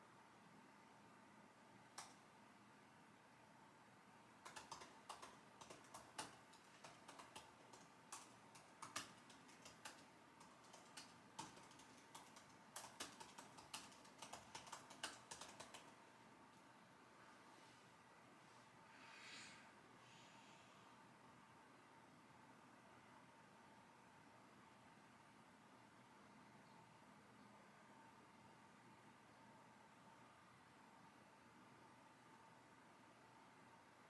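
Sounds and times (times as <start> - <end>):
computer keyboard typing: 4.4 - 16.0.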